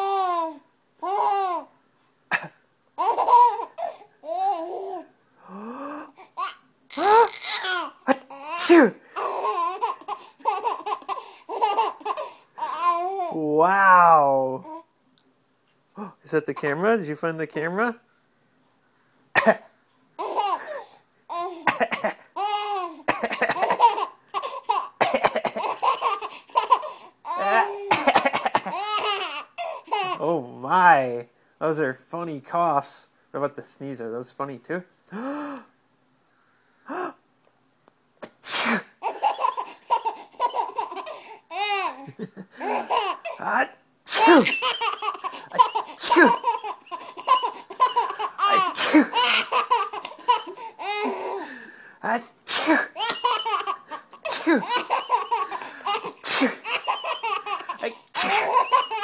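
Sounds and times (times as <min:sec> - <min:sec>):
baby laughing: 0:00.0 - 0:01.7, 0:02.3 - 0:05.1, 0:06.3 - 0:13.4, 0:20.2 - 0:30.3, 0:39.0 - 0:51.5, 0:52.8 - 0:59.0
adult playful coughs: 0:02.3 - 0:02.6, 0:19.4 - 0:19.7, 0:21.7 - 0:22.3, 0:23.1 - 0:23.9, 0:25.0 - 0:25.8, 0:27.8 - 0:28.9, 0:45.6 - 0:46.5, 0:48.6 - 0:49.5, 0:52.5 - 0:53.2, 0:54.2 - 0:54.8, 0:56.2 - 0:56.7.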